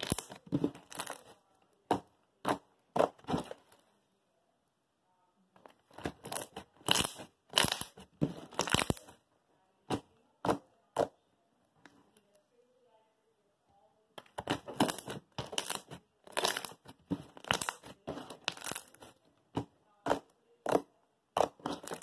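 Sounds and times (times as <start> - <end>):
crunchy slime squeezed crackling: 0.0 - 1.3, 5.9 - 9.1, 14.4 - 19.1, 21.4 - 22.0.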